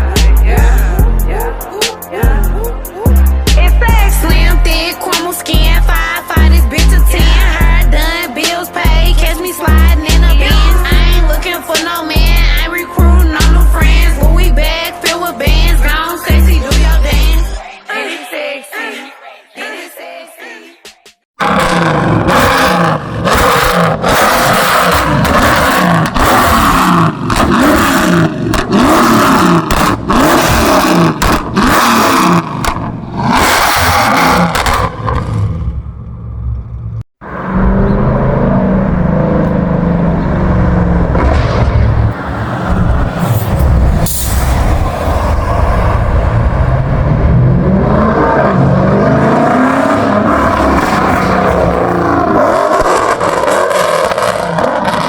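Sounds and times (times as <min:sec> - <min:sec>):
car engine revving: 0:21.4 - 0:55.0
exhaust pops and crackles: 0:23.2 - 0:37.0.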